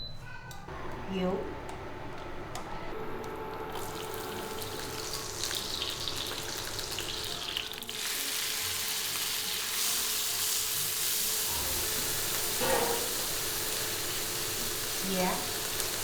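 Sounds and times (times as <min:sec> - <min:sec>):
oil sizzling in a hot pan: 0:03.7 - 0:16.0.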